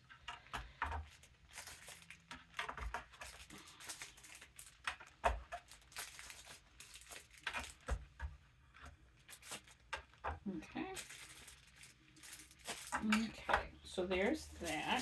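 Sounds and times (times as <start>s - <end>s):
plastic parts clicking: 0.0s - 10.4s.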